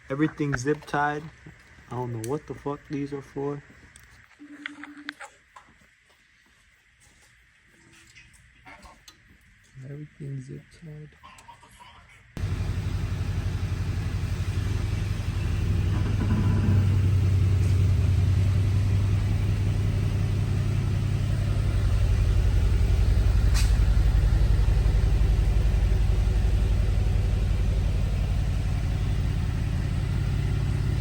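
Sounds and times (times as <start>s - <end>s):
car engine idling: 12.4s - 31.0s.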